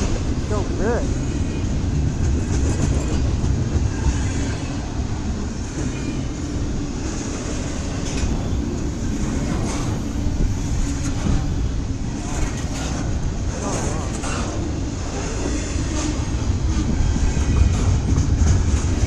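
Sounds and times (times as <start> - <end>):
train wheels rumbling on rails: 0.0 - 19.0.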